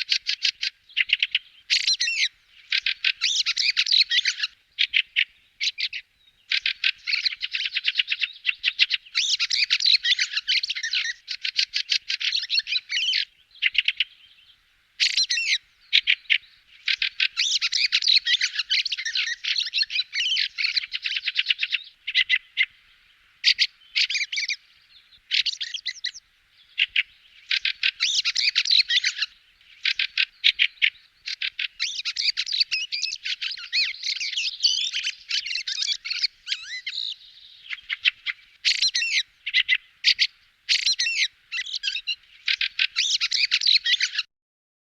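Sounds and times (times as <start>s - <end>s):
bird chattering call: 15.0s - 22.7s, 26.8s - 44.3s.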